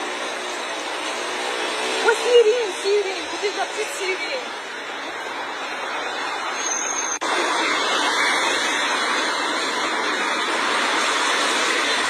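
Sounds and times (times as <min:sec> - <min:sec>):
traffic on flooded street: 0:00.0 - 0:12.0.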